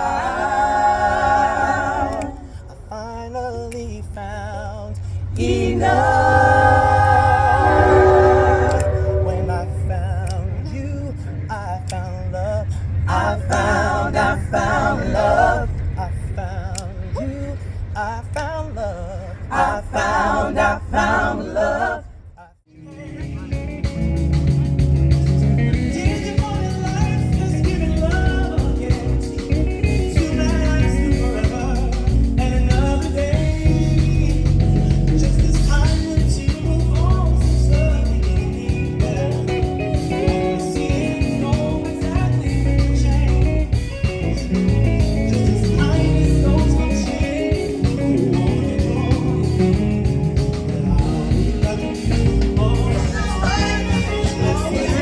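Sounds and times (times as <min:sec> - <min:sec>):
heavy bass: 0:05.2 - 0:11.6, 0:12.8 - 0:18.4, 0:22.8 - 0:55.0
person singing: 0:05.4 - 0:10.4, 0:25.6 - 0:43.8, 0:45.3 - 0:50.0, 0:50.7 - 0:55.0
electric guitar: 0:22.9 - 0:55.0
drum kit playing: 0:23.0 - 0:55.0.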